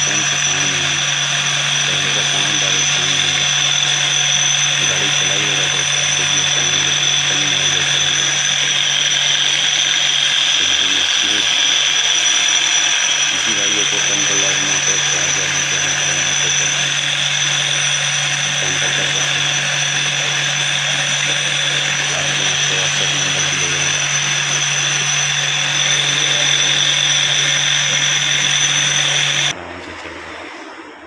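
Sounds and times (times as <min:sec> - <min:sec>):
electric motor whining: 0:00.0 - 0:30.8.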